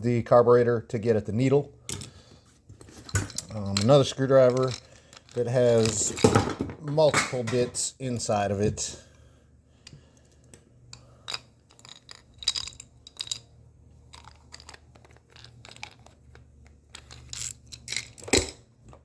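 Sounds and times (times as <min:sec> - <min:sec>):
tools clicking and clinking: 0:01.8 - 0:02.2, 0:02.8 - 0:07.8, 0:10.2 - 0:13.5, 0:14.1 - 0:18.7
tool bag rustling: 0:02.5 - 0:07.7.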